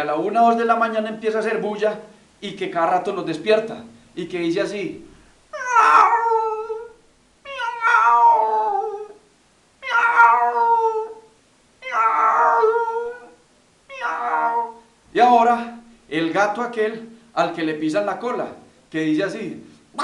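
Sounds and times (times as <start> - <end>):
man imitating cat yowls: 5.5 - 14.9.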